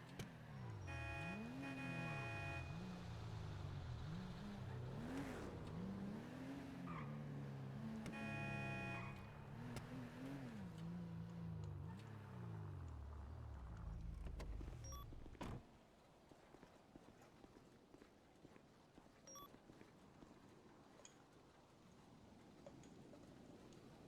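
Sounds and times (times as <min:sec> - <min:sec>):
car engines revving: 0:00.4 - 0:15.5
car horn honking: 0:00.8 - 0:03.0, 0:08.1 - 0:09.7.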